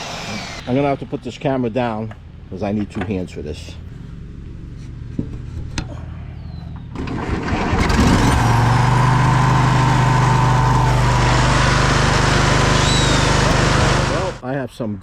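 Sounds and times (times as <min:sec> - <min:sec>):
engine cranking and running: 0:06.9 - 0:14.4.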